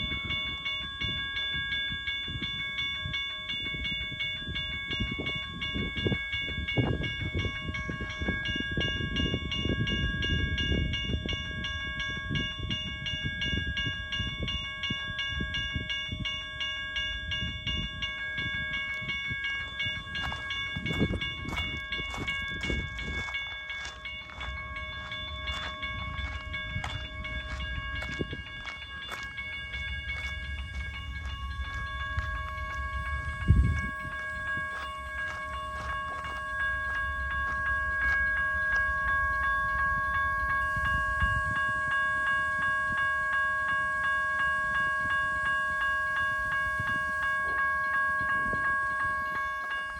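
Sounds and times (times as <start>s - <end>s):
electronic crossing bells ringing: 0.0s - 49.9s
train rumbling past: 17.0s - 43.0s.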